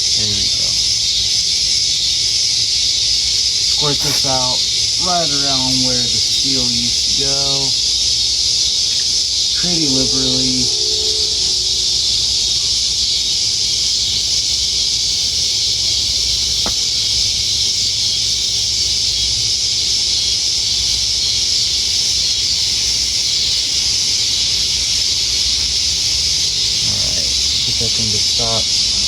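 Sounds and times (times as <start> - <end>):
insect chorus hiss: 0.0 - 29.0
low hum: 9.8 - 12.7.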